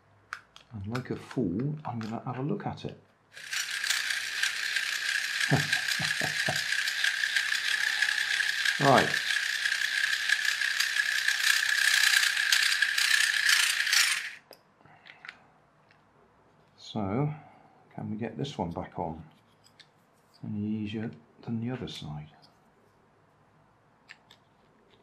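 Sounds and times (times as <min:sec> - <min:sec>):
plastic gears clattering: 0:03.3 - 0:14.4
toy motor whine: 0:03.3 - 0:14.4.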